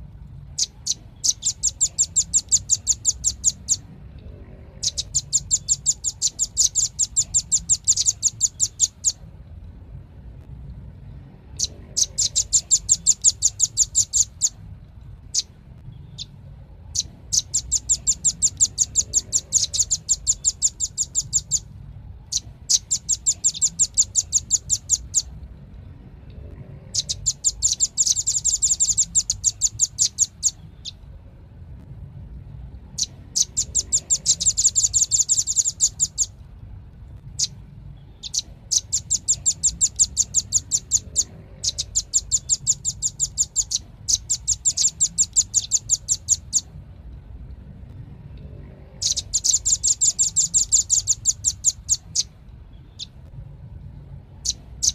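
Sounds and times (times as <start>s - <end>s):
bird trilling high chip notes: 0.6s - 3.8s, 4.8s - 9.2s, 11.6s - 14.6s, 16.9s - 21.7s, 22.3s - 25.3s, 26.9s - 31.0s, 33.0s - 36.4s, 38.1s - 46.7s, 49.0s - 52.3s.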